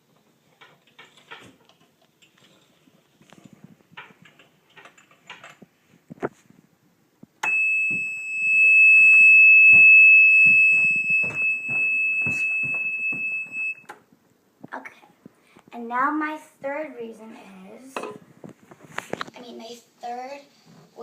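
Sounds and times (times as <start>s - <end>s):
buzzer high-pitched tone: 7.4s - 13.8s.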